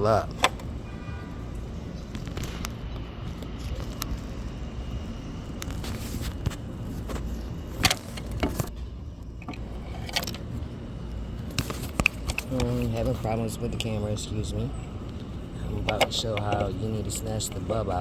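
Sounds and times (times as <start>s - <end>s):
steady low rumble: 0.0s - 18.0s
handling clicks and rattles: 5.6s - 10.6s, 11.4s - 14.0s, 15.0s - 18.0s.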